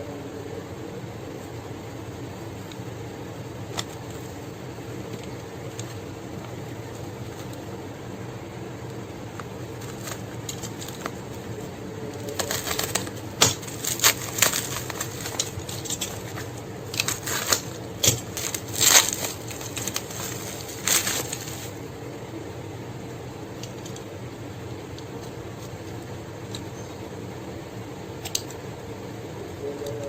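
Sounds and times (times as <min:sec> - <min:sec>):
steady low hum: 0:00.0 - 0:30.0
plastic packaging crinkling: 0:09.3 - 0:21.9.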